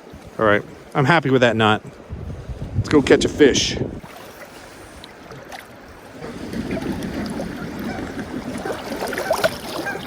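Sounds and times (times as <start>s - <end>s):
river water: 0.0s - 10.0s
wind noise: 1.6s - 4.1s, 6.0s - 10.0s.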